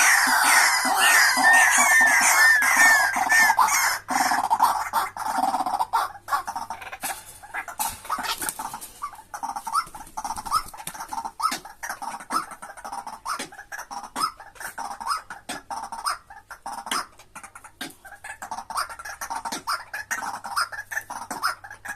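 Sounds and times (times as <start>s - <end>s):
sharp bird clicks: 6.5s - 21.9s.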